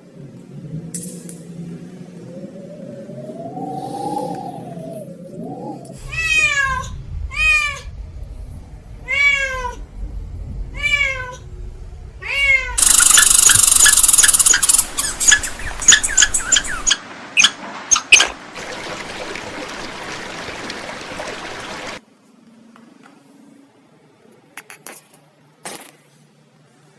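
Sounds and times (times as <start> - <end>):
cat meowing: 6.0 - 7.9, 9.0 - 9.8, 10.7 - 11.4, 12.2 - 12.8.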